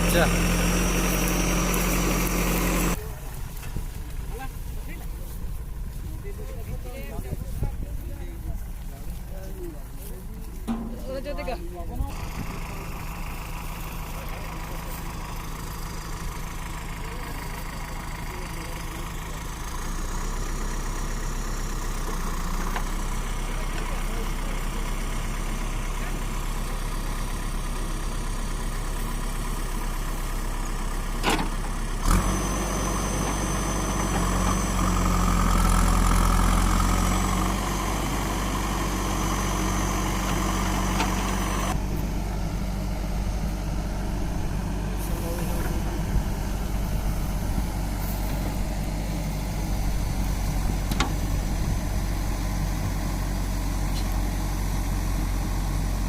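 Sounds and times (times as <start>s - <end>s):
diesel engine running: 0.0s - 56.0s
background voices: 33.3s - 52.6s.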